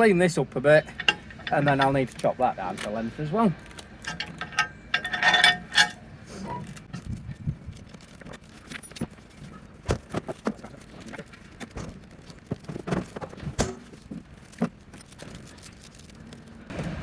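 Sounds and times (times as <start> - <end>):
tools knocking and clicking: 0.8 - 2.3, 4.0 - 6.0.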